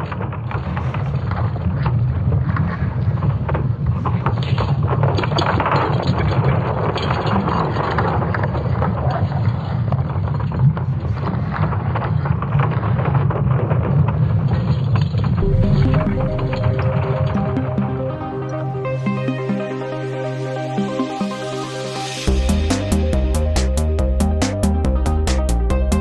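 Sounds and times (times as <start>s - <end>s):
crackling and creaking: 0.0s - 17.0s
deep rumble: 15.4s - 26.0s.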